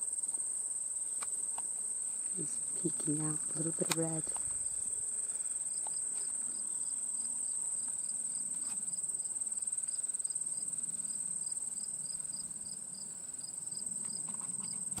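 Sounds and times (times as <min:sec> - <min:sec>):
high-pitched insect trill: 0:00.0 - 0:15.0
lower cricket chirp: 0:00.0 - 0:15.0.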